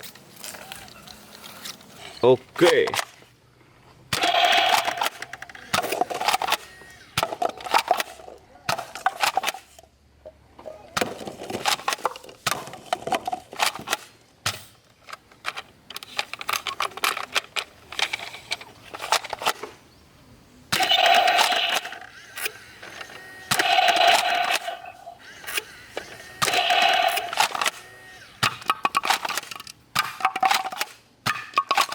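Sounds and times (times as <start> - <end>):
plastic toy guns clicking and rattling: 2.5 - 3.2, 4.2 - 9.8, 11.0 - 19.7, 20.7 - 31.9
toy gun buzzing tone: 4.2 - 7.2, 20.8 - 28.7.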